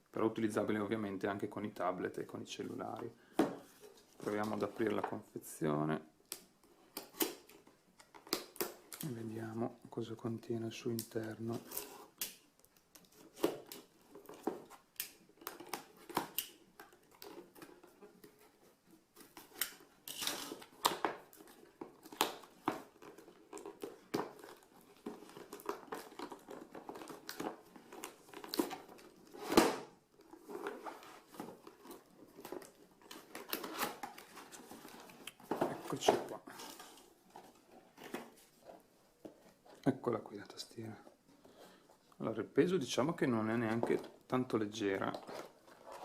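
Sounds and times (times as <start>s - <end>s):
cardboard packaging crinkling and tearing: 12.8s - 40.0s, 43.5s - 46.0s.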